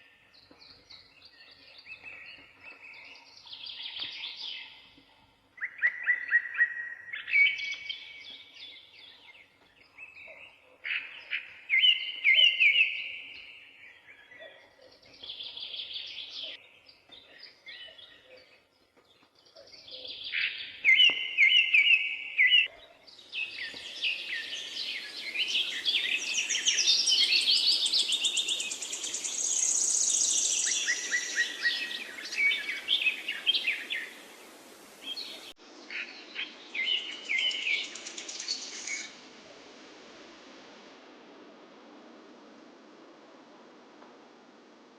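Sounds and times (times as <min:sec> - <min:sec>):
birds chirping: 0:00.0 - 0:39.2
steady hiss: 0:23.1 - 0:44.9.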